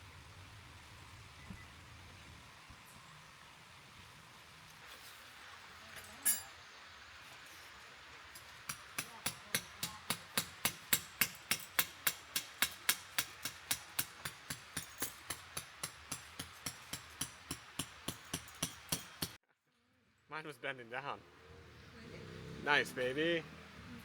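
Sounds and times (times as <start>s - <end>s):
hammer driving tent stake: 8.7s - 19.4s.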